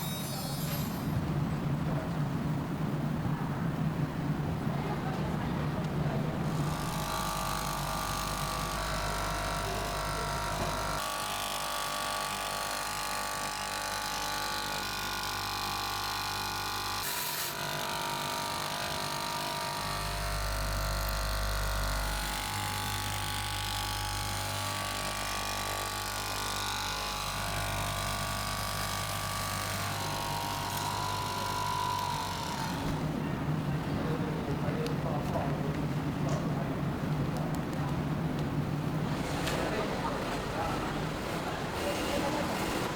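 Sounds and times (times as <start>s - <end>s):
factory machinery humming: 0.0s - 11.0s.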